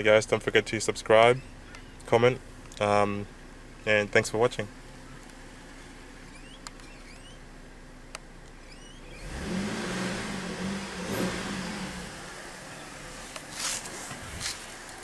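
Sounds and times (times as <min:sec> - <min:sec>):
low steady hum: 0:00.0 - 0:09.2
faint chirps and clicks: 0:01.6 - 0:02.8, 0:05.1 - 0:07.4
car engine revving: 0:08.5 - 0:15.0.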